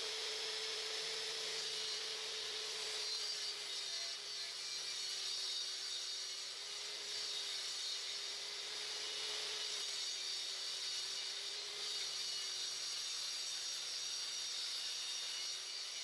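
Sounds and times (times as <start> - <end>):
table saw running: 0.0 - 3.7.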